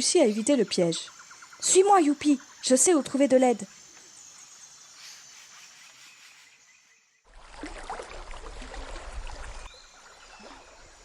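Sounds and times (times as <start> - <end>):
rushing river water: 7.3 - 11.0.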